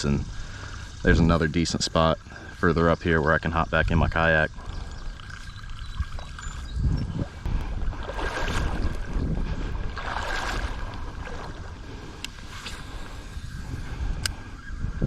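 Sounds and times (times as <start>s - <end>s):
wind buffeting microphone: 0.0s - 15.0s
water splashing from wading: 7.4s - 11.9s.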